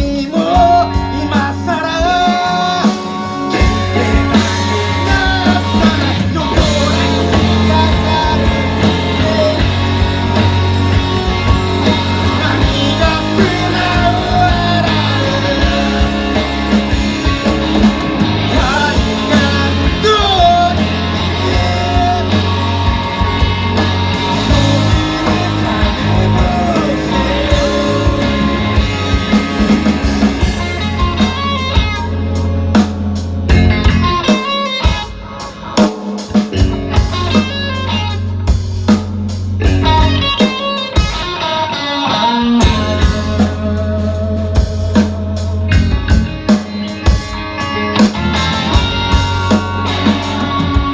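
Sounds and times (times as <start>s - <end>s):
bass guitar: 0.0s - 50.9s
drum kit: 0.0s - 50.9s
electric guitar: 0.0s - 50.9s.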